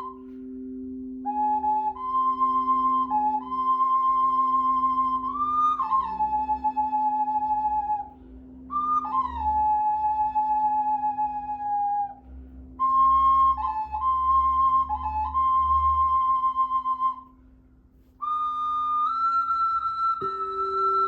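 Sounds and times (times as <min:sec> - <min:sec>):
flute playing long notes: 0:00.0 - 0:00.5, 0:01.2 - 0:12.2, 0:12.8 - 0:17.4, 0:18.2 - 0:21.0
steady low drone: 0:00.0 - 0:16.2.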